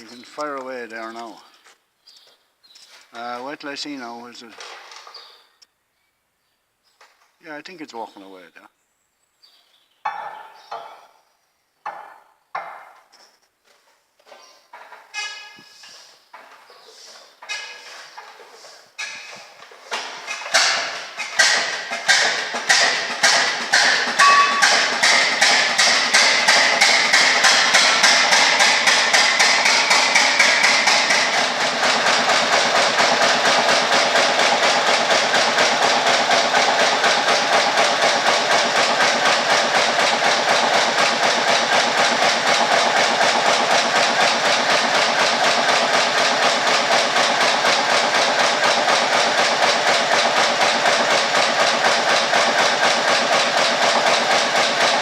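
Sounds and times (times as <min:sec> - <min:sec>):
stationary engine exhaust beats: 0:20.2 - 0:55.0.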